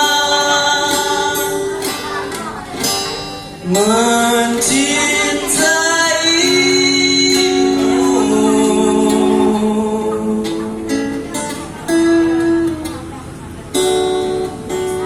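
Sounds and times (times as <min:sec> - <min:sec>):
person singing long notes: 0:00.0 - 0:01.9, 0:03.6 - 0:11.2
instrumental accompaniment: 0:00.0 - 0:15.0.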